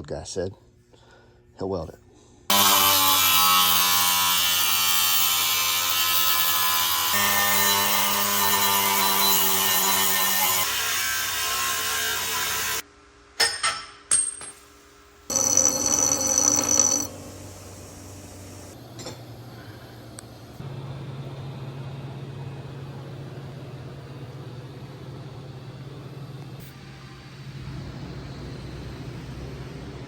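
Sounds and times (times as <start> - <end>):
power tool cutting metal: 2.5 - 12.8, 15.3 - 17.3.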